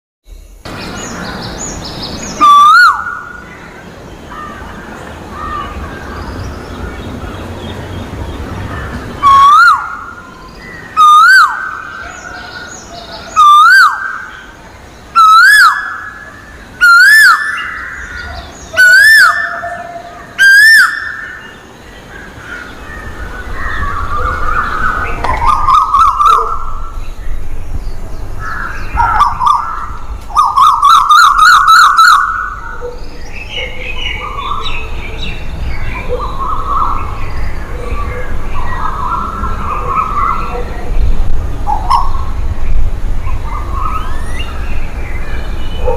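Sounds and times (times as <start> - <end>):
koel calling: 8.9 - 10.3.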